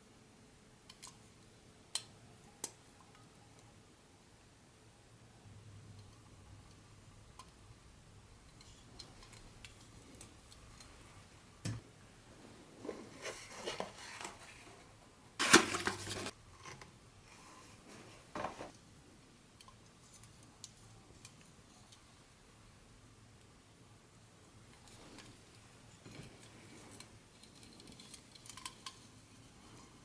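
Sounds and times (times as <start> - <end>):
handling noise: 12.5 - 16.4.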